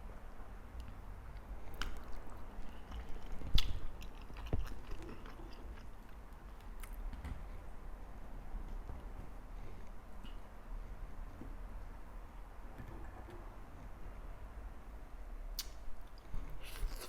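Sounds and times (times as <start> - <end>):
person chewing food: 1.3 - 7.0, 15.6 - 17.0
wet mouth clicks and smacks: 15.6 - 15.8.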